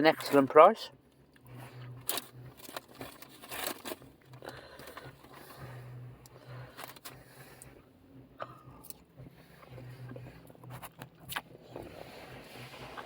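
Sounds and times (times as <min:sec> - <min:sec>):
faint low hum: 0:00.0 - 0:13.0
food packaging crinkling: 0:02.0 - 0:05.5.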